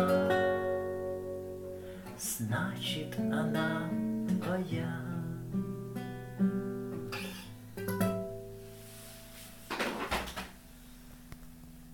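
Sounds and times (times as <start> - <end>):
acoustic guitar chords: 0.0 - 11.9.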